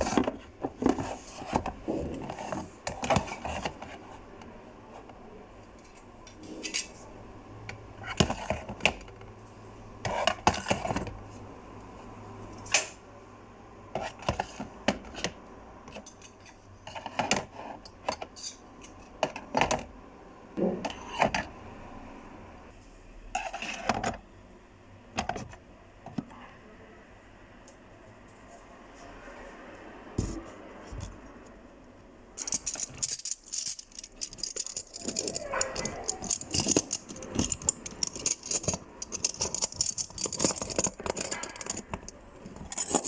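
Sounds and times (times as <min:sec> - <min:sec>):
small hard objects clinking: 0:32.4 - 0:43.0.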